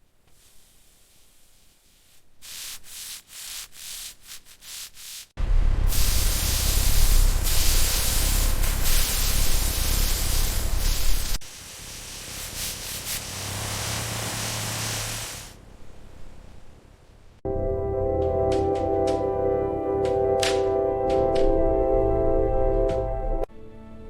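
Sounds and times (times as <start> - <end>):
hand sanding strokes: 0.4 - 5.4, 6.0 - 15.6
loud spraying hiss: 0.4 - 15.6
low rumble: 5.4 - 8.2.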